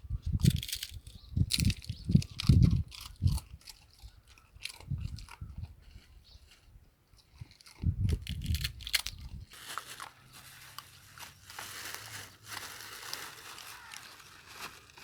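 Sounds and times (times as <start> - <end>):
dog chewing food: 2.4 - 5.8
faint crackling noise: 9.5 - 15.0.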